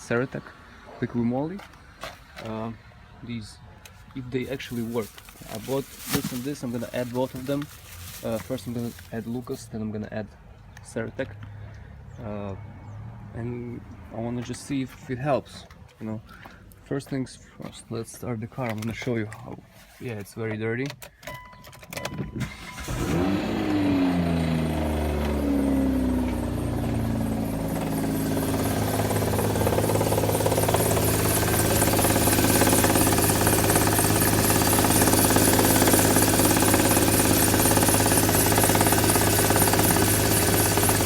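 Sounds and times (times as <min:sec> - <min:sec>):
car engine starting and idling: 0:22.4 - 0:41.0
rapid ticking engine knock: 0:27.0 - 0:41.0.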